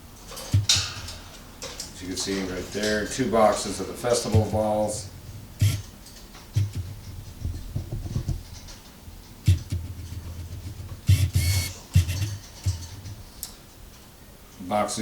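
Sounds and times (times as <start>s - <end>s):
cardboard boxes knocking and scraping: 6.6s - 8.6s.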